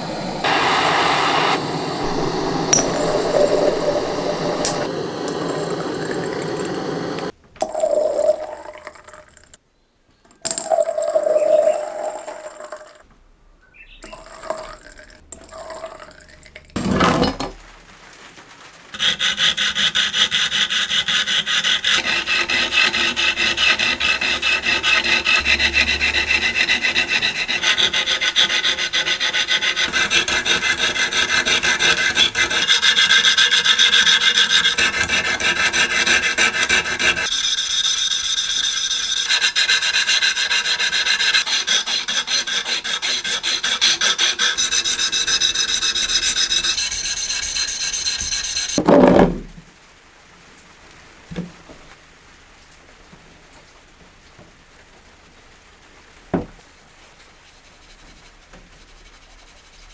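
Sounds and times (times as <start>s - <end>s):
abrasive sanding strokes: 0.0s - 7.4s, 19.0s - 48.8s.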